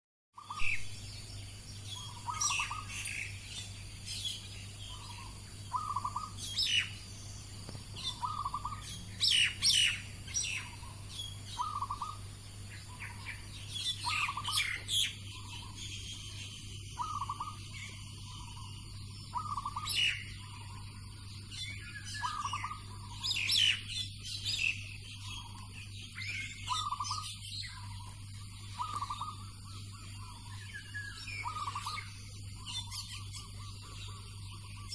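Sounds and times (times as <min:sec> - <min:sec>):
starling whistles and chirps: 0:00.4 - 0:34.9
steady low hum: 0:00.4 - 0:34.9
dove cooing: 0:02.0 - 0:14.7.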